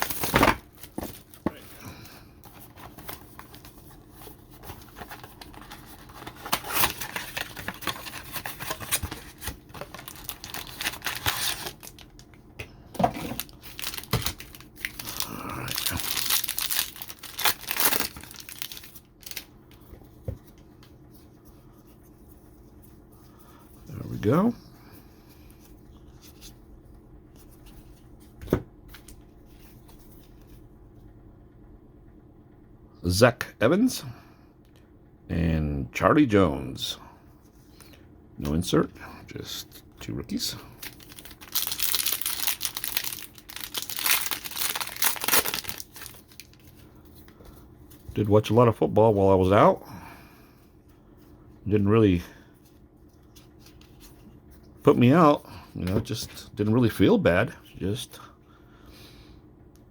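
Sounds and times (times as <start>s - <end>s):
packaging rustling: 0.0s - 12.4s, 13.0s - 19.5s, 40.7s - 48.3s.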